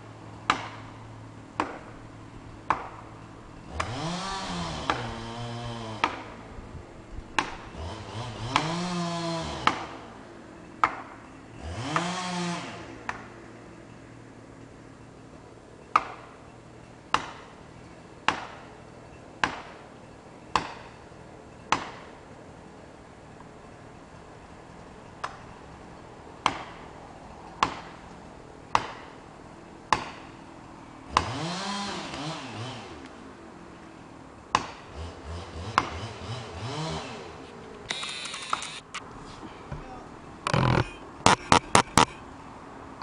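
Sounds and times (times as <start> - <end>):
chainsaw revving: 3.7 - 6.2, 7.6 - 9.9, 11.6 - 12.9, 31.1 - 33.1, 34.9 - 38.9, 40.5 - 42.1.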